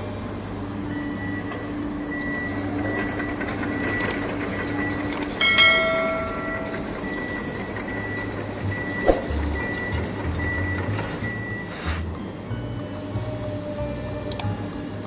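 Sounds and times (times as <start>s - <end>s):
sharp electronic clicks: 3.9s - 4.2s, 4.8s - 5.4s, 14.3s - 14.5s
bell-like chime: 5.4s - 7.6s.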